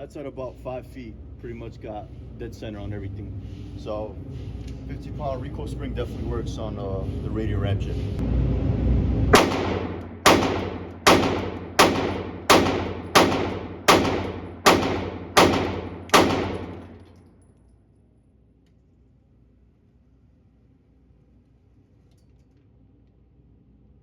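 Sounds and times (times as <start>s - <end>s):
pistol shots: 9.4s - 17.1s.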